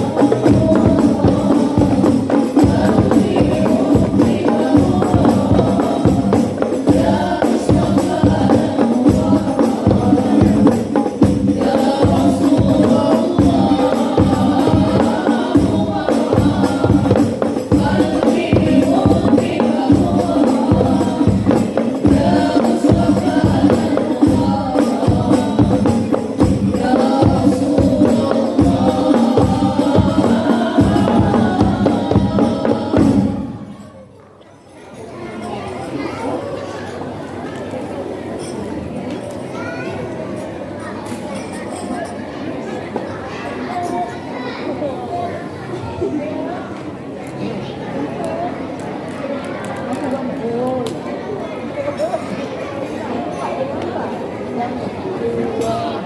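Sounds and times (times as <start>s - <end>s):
frame drums beating: 0.0s - 33.8s
group singing devotional song: 0.0s - 34.0s, 55.2s - 56.0s.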